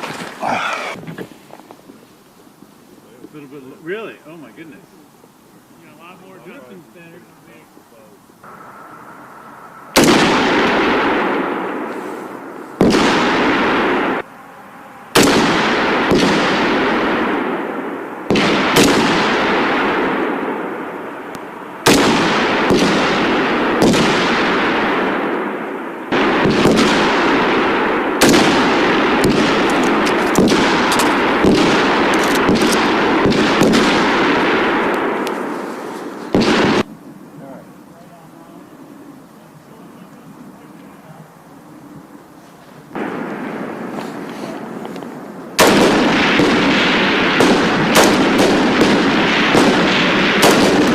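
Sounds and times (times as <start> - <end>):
gunshots with rolling echo: 8.4 - 37.0, 42.9 - 50.9.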